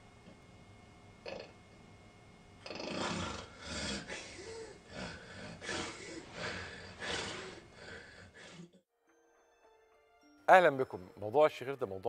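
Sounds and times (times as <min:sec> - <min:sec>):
person breathing harshly: 0:02.9 - 0:08.8.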